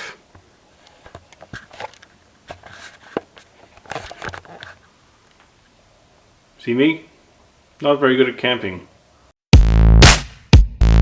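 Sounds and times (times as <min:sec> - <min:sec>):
camping gear rustling and knocking: 0:00.3 - 0:05.5.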